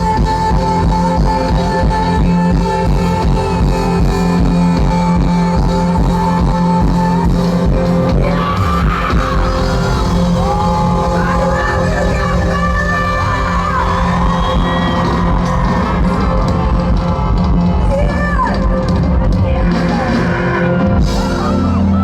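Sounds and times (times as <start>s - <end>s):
person singing: 0.0s - 16.5s
live band music: 0.0s - 22.0s.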